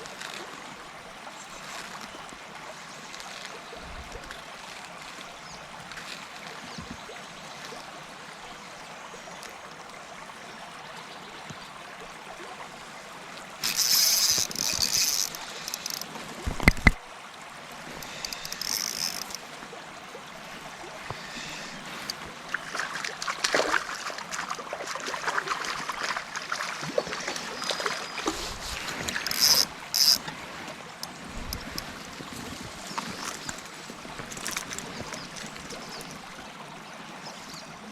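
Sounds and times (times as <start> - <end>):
river rushing: 12.6 - 37.9.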